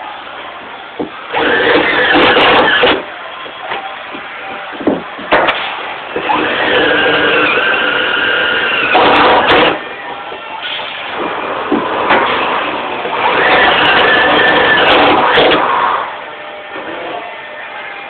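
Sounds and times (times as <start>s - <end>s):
power drill driving screws: 1.3s - 3.0s, 6.1s - 9.8s, 13.1s - 15.6s.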